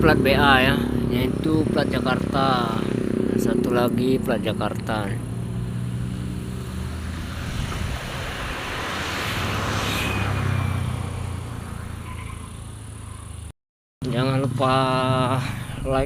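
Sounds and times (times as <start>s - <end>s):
heavy truck driving past: 5.3s - 13.5s.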